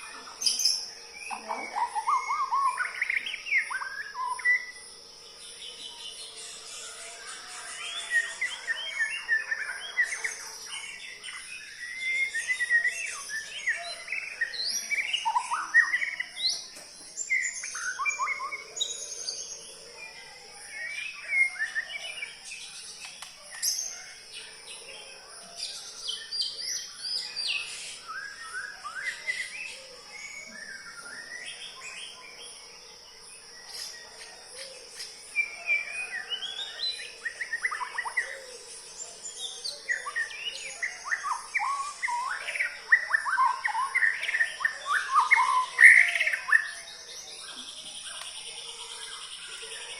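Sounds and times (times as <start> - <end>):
songbird singing: 0.0 - 49.9.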